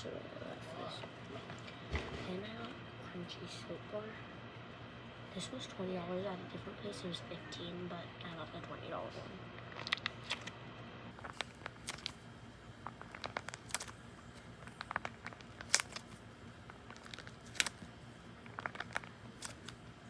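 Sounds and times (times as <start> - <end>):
squishy crackling crunches: 9.5 - 19.9.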